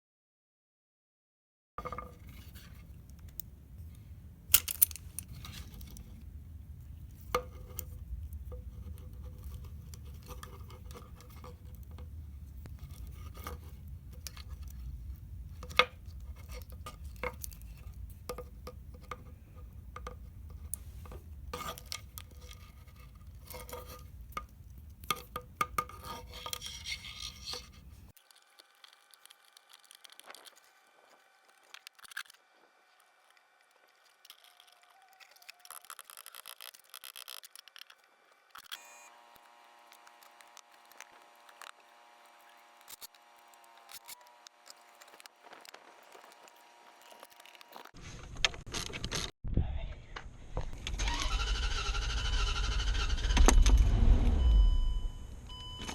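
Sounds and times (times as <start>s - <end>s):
low rumble: 49.5s - 55.9s.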